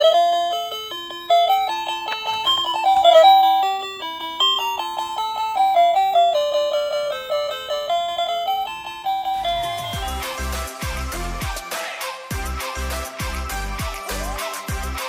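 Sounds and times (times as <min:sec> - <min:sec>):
plinky electronic toy melody: 0:00.0 - 0:11.2.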